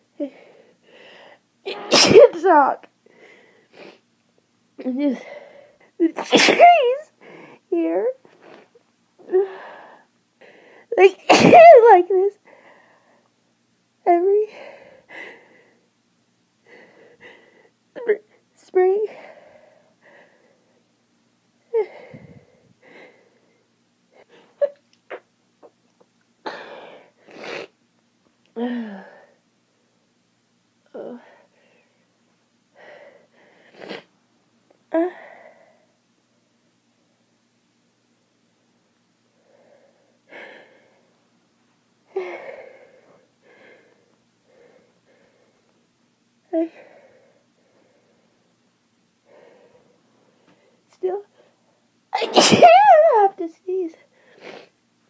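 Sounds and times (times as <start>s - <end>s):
woman breathing hard: 0.3s - 1.5s, 3.1s - 4.0s, 9.3s - 10.9s, 16.6s - 17.8s, 21.8s - 23.6s, 26.5s - 27.3s, 32.8s - 33.9s, 39.4s - 41.2s, 42.1s - 45.7s, 46.6s - 48.4s, 49.2s - 50.8s
woman sneezing: 1.7s - 2.6s, 6.0s - 7.1s, 11.0s - 12.1s, 52.2s - 53.4s
woman moaning: 9.2s - 9.8s, 28.6s - 29.4s, 30.9s - 31.4s, 34.9s - 35.5s.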